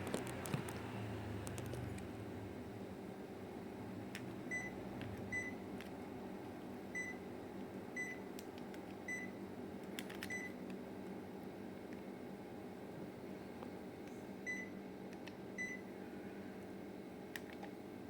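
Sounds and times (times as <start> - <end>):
air conditioner running hum: 0.0 - 18.0
air conditioner beeps: 4.4 - 5.7, 6.8 - 8.4, 9.0 - 9.6, 10.2 - 10.6, 14.3 - 16.0.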